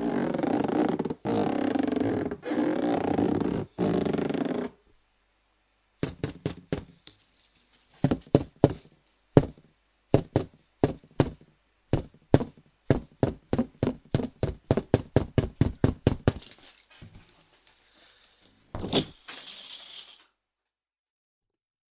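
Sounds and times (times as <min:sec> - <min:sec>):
rubber balloon squeaking: 0:00.0 - 0:04.8.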